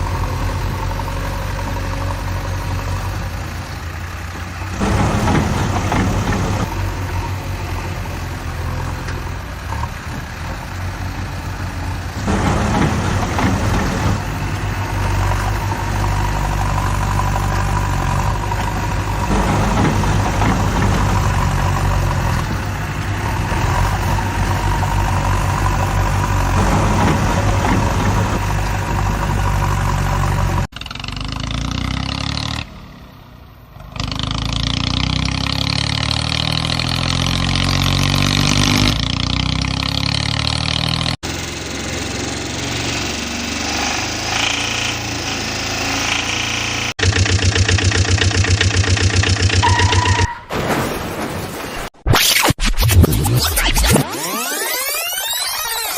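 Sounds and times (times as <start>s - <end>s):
vehicle engine idling: 0.0s - 31.7s, 40.6s - 50.4s.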